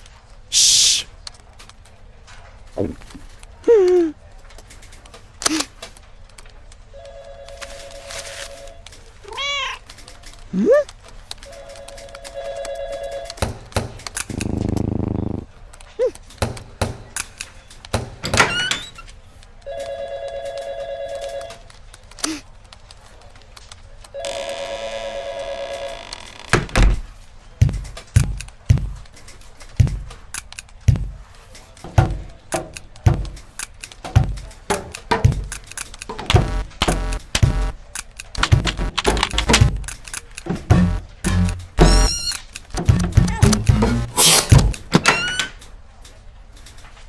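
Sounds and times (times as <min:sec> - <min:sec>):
heavy thumps: 0:26.6 - 0:29.1, 0:29.8 - 0:30.3, 0:30.9 - 0:31.3, 0:31.9 - 0:45.1
knocks and thuds: 0:26.6 - 0:29.1, 0:29.8 - 0:30.3, 0:30.9 - 0:31.2, 0:31.9 - 0:33.5, 0:34.1 - 0:37.8, 0:38.4 - 0:45.2
electronic ringing tone: 0:40.7 - 0:42.4.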